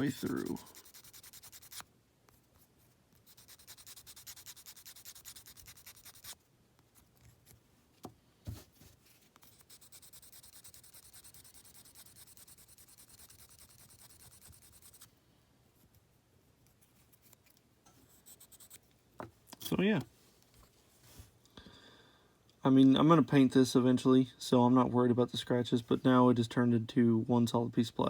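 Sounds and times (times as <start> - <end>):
sanding stick rubbing plastic: 0.0 - 1.8, 3.2 - 6.4, 9.5 - 15.1.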